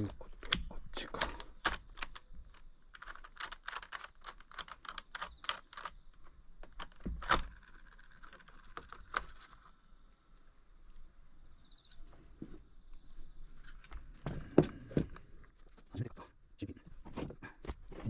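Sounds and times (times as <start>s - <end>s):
chainsaw parts clicking and rattling: 0.0s - 9.7s
high insect drone: 0.0s - 16.4s.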